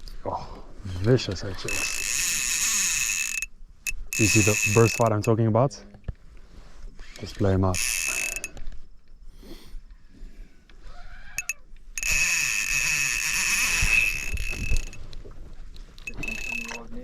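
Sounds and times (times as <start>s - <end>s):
fishing reel drag buzzing: 0.9s - 5.4s, 6.9s - 8.8s, 11.0s - 15.3s, 15.9s - 17.0s.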